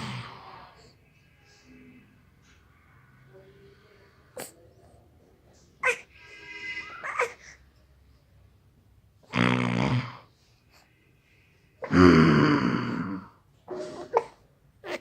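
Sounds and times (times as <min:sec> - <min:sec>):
person snoring: 0:09.3 - 0:10.3, 0:11.8 - 0:13.4.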